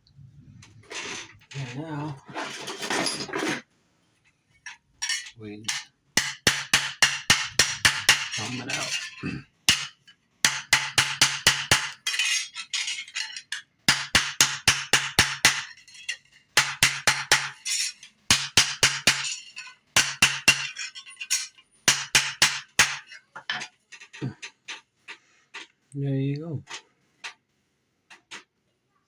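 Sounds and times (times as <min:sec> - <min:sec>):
hammer strikes on metal: 0:05.7 - 0:08.5, 0:09.7 - 0:12.0, 0:13.9 - 0:15.8, 0:16.6 - 0:17.6, 0:18.3 - 0:19.4, 0:20.0 - 0:20.8, 0:21.8 - 0:23.1.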